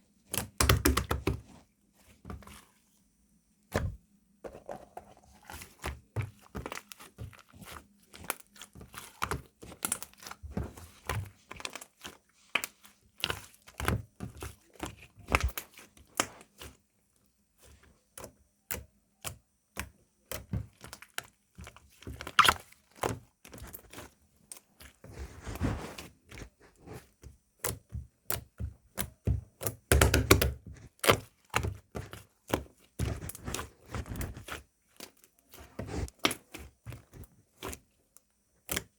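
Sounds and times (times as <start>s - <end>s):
slime clicks and pops: 22.4s - 22.6s.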